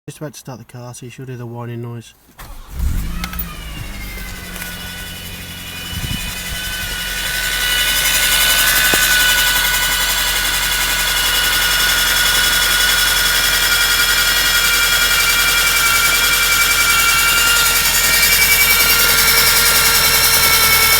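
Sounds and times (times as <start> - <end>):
low engine hum: 2.4 - 11.5
high-pitched whine: 2.8 - 11.7.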